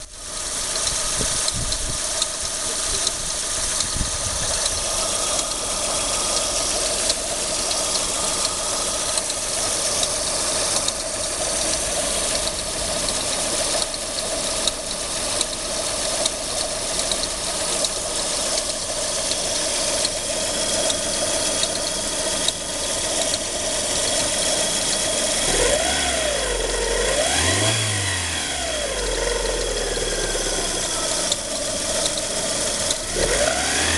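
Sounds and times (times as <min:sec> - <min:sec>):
engine running: 0:00.0 - 0:33.9
fast clicking from tensioner roller: 0:03.0 - 0:25.3, 0:30.8 - 0:33.1.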